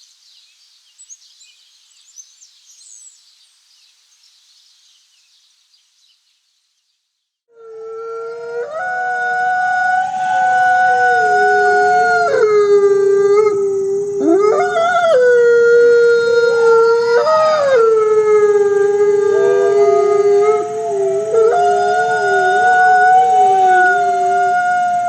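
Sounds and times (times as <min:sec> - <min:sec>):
dogs howling together: 0:07.7 - 0:25.0.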